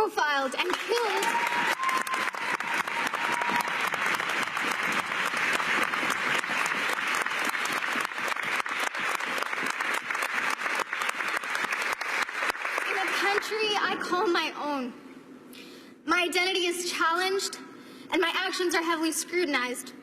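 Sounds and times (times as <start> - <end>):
crowd applauding: 0.6 - 14.0.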